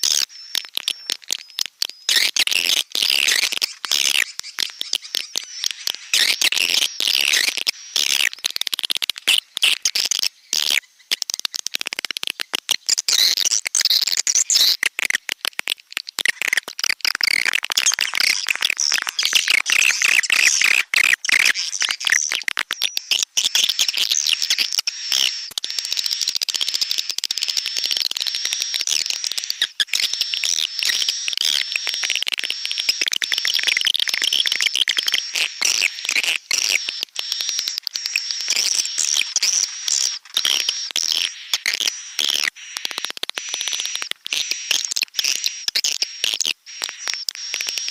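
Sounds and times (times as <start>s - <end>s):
swiftlet twittering: 22.8s - 47.9s.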